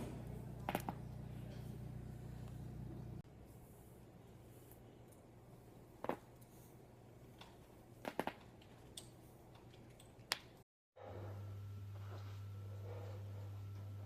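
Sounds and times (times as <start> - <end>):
steady low hum: 0.0 - 8.0, 11.0 - 14.0.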